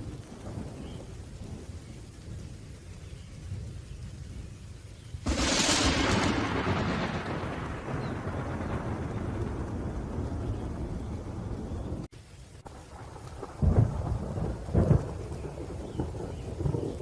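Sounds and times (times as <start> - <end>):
low thunder rumble: 0.0 - 17.0
rain: 0.0 - 17.0
sharp thunderclaps: 5.2 - 12.1, 12.9 - 17.0.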